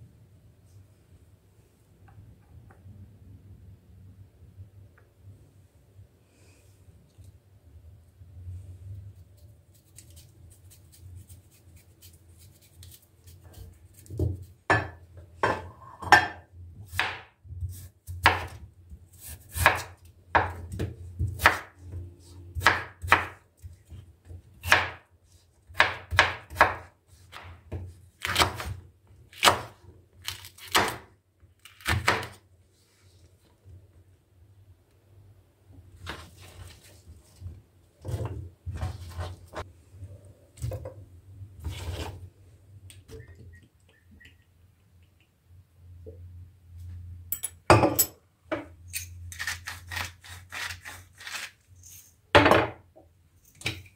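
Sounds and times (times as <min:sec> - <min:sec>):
knife chopping on wooden board: 0:16.9 - 0:17.3, 0:19.5 - 0:21.7, 0:22.6 - 0:23.4, 0:24.6 - 0:25.0, 0:25.7 - 0:29.7.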